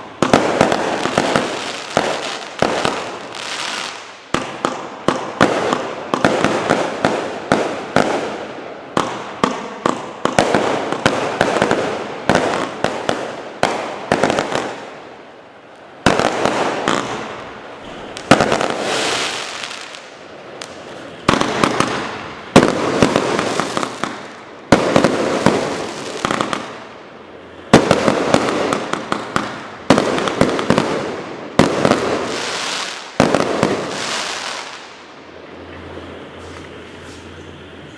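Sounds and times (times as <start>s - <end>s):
firework crackling: 0.0s - 37.9s
firework cake firing: 16.0s - 26.9s.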